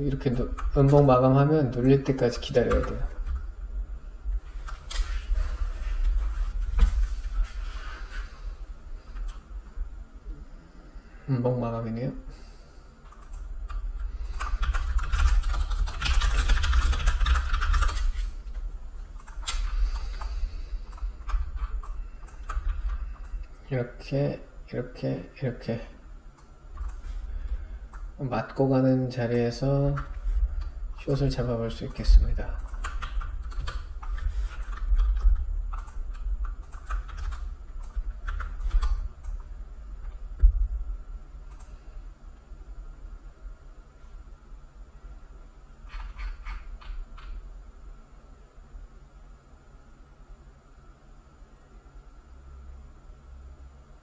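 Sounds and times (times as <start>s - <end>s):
keyboard and mouse clicking: 13.1s - 18.2s, 19.2s - 23.5s, 26.4s - 27.0s, 31.9s - 39.4s, 45.9s - 47.4s.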